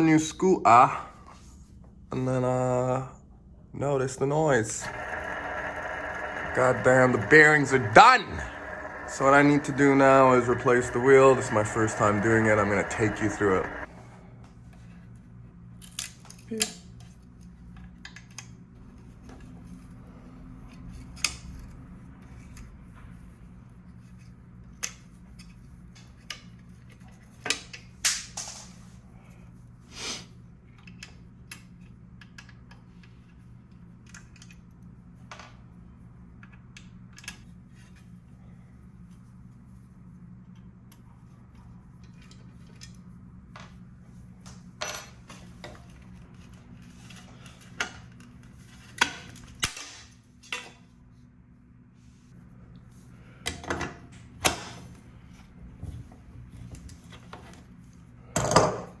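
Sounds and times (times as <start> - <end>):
steady low hum: 4.4 - 14.2.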